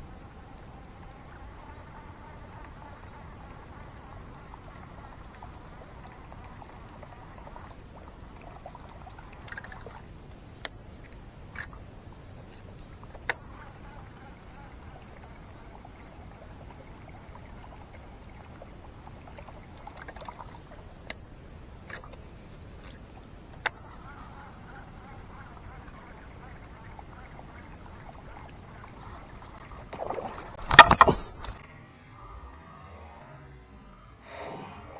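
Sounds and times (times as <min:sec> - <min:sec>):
outdoor background noise: 0:00.0 - 0:34.9.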